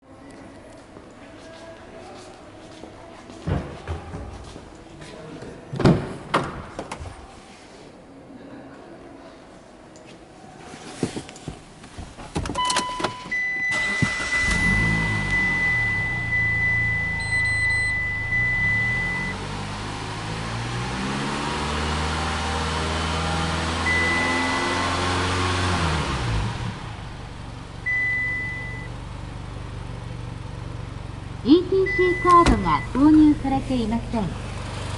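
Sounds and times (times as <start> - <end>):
car engine starting and running: 12.4 - 34.9
steady high beep tone: 14.4 - 19.4, 23.9 - 24.8, 27.9 - 28.9, 31.8 - 33.0.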